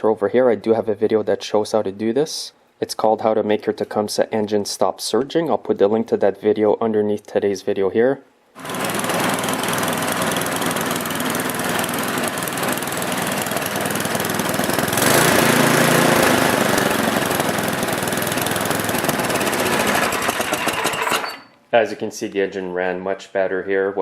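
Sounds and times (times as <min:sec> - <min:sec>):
small engine running: 0:08.6 - 0:21.5.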